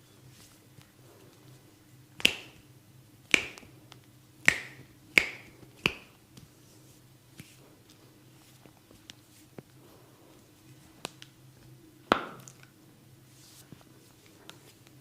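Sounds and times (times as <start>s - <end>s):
sharp hand snaps: 2.2s - 2.6s, 3.3s - 3.7s, 4.4s - 6.5s.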